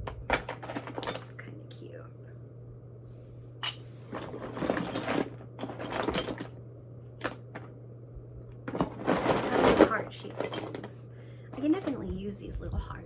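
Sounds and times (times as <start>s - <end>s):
craft supplies rattling in a box: 0.3s - 1.4s, 4.1s - 6.5s, 8.7s - 11.0s.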